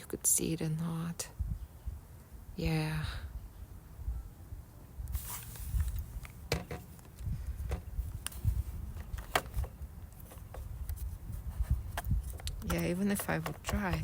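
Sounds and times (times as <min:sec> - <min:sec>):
screwdriver clicks and taps on laptop: 0:12.0 - 0:14.0.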